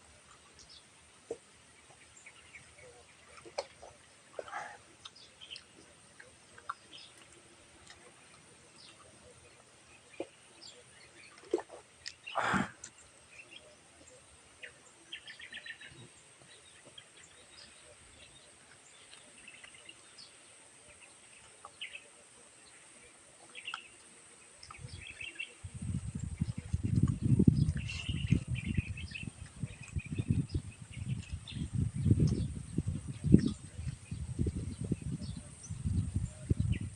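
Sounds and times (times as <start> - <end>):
mouth clicks and small crunches: 11.3 - 13.1.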